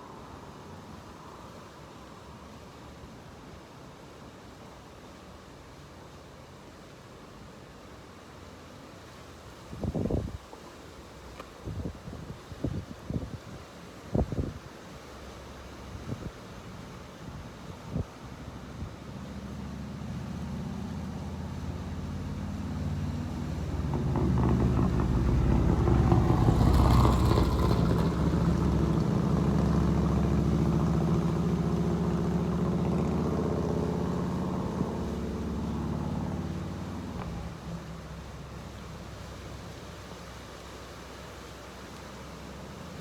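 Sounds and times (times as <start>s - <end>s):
vehicle engine passing by: 18.5s - 40.4s.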